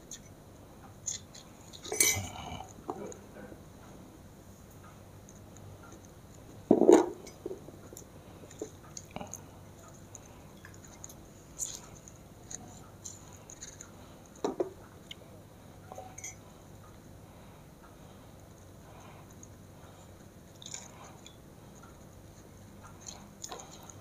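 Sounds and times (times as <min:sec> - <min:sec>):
small clinks and ticks: 0:18.9 - 0:22.0.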